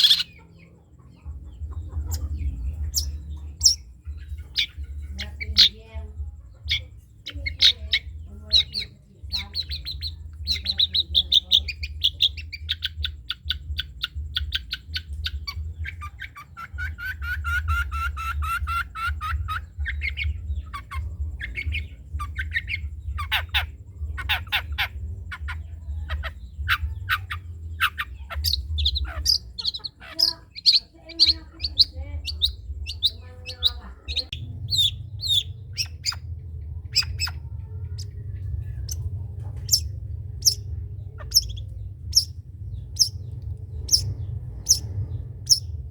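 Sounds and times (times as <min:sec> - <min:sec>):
shrike singing: 0:00.0 - 0:45.9
steady low hum: 0:00.0 - 0:45.9.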